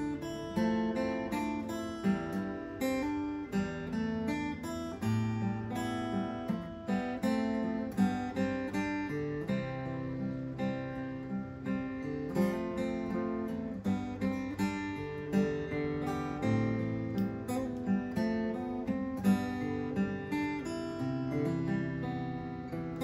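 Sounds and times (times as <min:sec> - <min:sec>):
acoustic guitar melody: 0:00.0 - 0:23.0.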